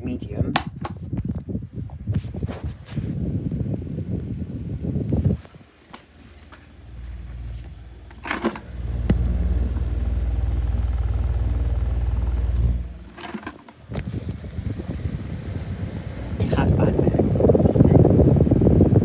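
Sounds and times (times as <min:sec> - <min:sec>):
desk fan with scratching bearings: 0:05.0 - 0:19.0.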